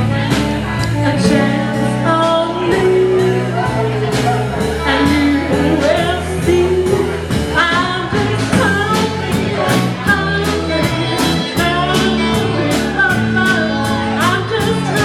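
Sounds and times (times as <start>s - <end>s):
bass guitar: 0.0s - 15.0s
drums: 0.0s - 15.0s
electric guitar: 0.0s - 15.0s
person singing: 0.0s - 15.0s.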